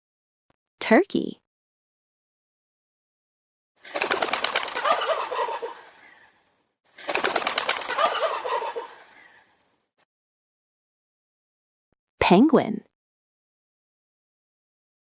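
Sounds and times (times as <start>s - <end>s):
turkey gobbling: 4.8s - 6.3s, 7.9s - 9.5s.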